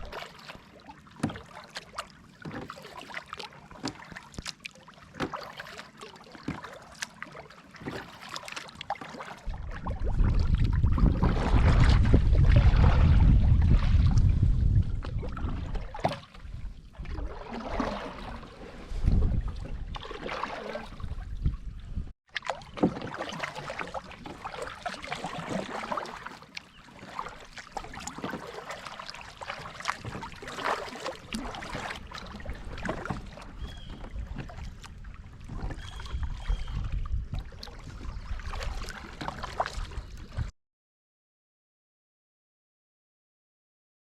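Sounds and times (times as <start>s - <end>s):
paddle splashing in water: 0.0s - 40.5s
wind rumble on microphone: 9.4s - 22.1s, 31.3s - 40.5s.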